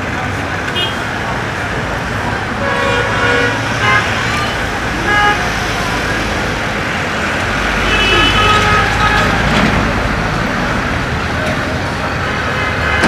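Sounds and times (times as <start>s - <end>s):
heavy street traffic: 0.0s - 13.0s
vehicle horns honking: 0.7s - 1.1s, 2.6s - 5.7s, 7.8s - 9.7s.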